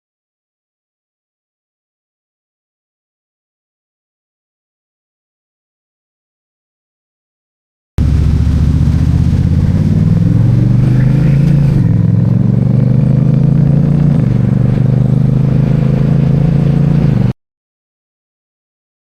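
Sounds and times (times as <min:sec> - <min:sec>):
vehicle engine running: 0:08.0 - 0:17.4.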